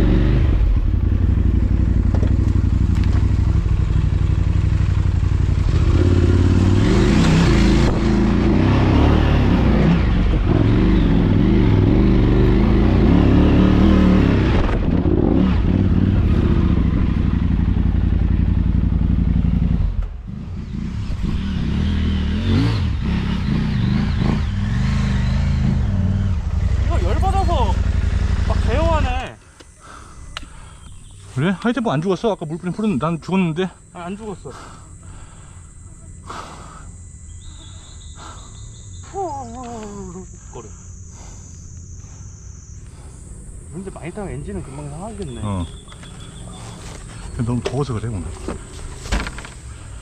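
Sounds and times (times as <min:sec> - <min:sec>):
motorcycle engine running: 0:00.0 - 0:31.5, 0:42.6 - 0:50.0.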